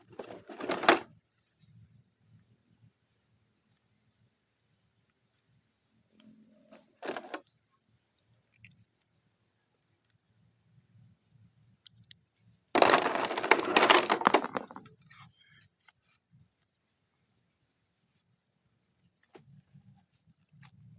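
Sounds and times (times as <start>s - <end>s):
plastic packaging crinkling: 0.0s - 1.0s, 7.0s - 7.4s, 12.8s - 14.8s.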